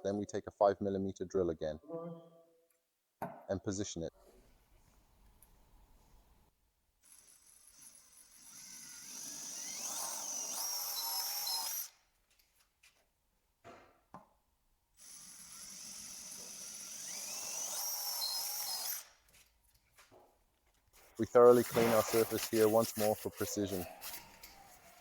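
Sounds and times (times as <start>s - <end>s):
power drill whining: 7.0s - 12.0s, 15.0s - 19.2s, 21.4s - 25.0s.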